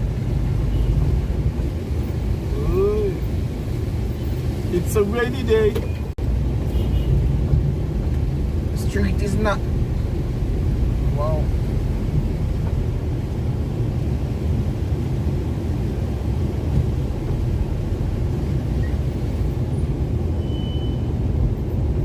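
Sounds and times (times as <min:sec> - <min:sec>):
vehicle engine and tyre noise: 0:00.0 - 0:22.0.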